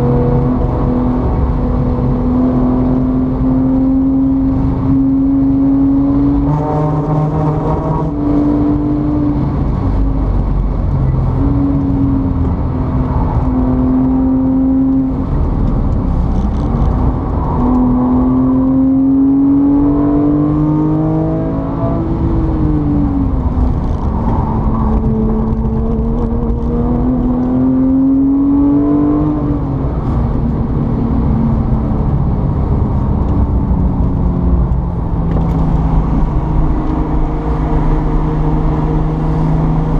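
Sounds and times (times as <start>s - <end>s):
steady rumble: 0.0s - 20.0s, 21.9s - 39.9s
vehicle engine revving: 0.0s - 39.9s.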